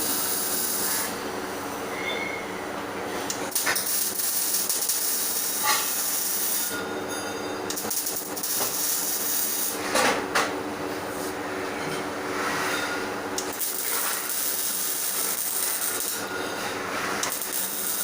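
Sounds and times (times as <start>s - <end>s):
welding arc hissing and crackling: 0.0s - 1.2s, 3.3s - 6.8s, 7.7s - 9.8s, 13.4s - 16.3s, 17.1s - 18.0s
welding machine hum: 0.0s - 1.9s, 2.6s - 11.4s, 13.1s - 18.0s.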